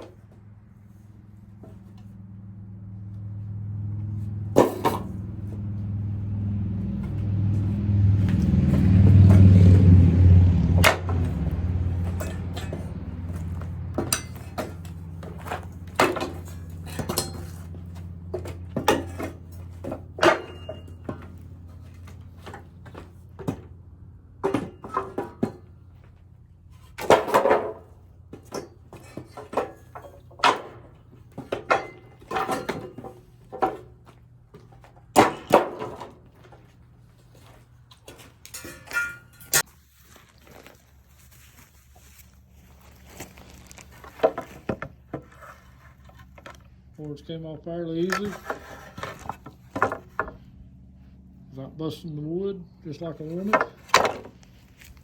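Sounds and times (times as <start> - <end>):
boards and tool clattering: 0.0 - 0.5, 4.4 - 5.7, 8.1 - 39.7, 43.8 - 46.8, 48.0 - 50.5, 53.1 - 55.0.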